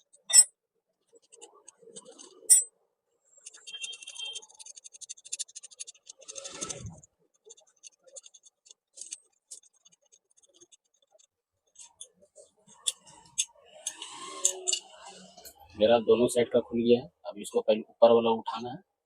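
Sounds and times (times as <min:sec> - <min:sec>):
screwdriver scratching metal parts: 0:00.0 - 0:00.5, 0:01.1 - 0:02.7, 0:03.4 - 0:15.5
scraping: 0:01.1 - 0:02.7, 0:03.4 - 0:15.6.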